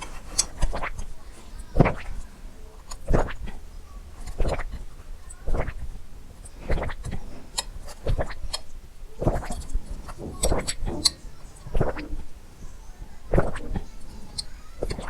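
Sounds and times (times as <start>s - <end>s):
wet mouth clicks: 0.0s - 1.1s, 2.8s - 3.6s, 4.2s - 4.9s, 5.5s - 12.3s, 13.3s - 15.0s
gulps of swallowing water: 3.0s - 3.6s, 4.3s - 4.9s, 6.7s - 8.6s, 9.2s - 12.3s, 13.3s - 15.0s.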